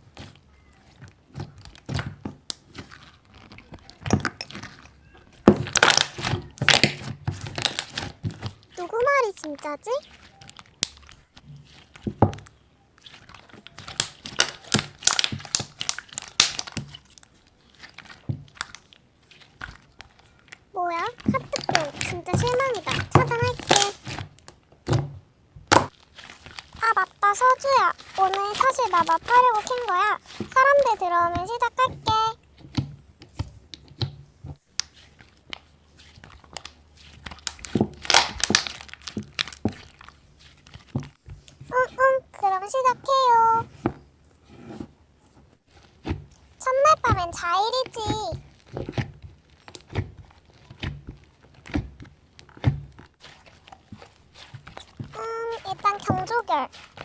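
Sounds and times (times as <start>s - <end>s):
slime squeezed by hand: 0.1s - 12.4s, 13.0s - 24.4s, 25.7s - 32.2s, 34.6s - 42.2s, 52.6s - 57.0s.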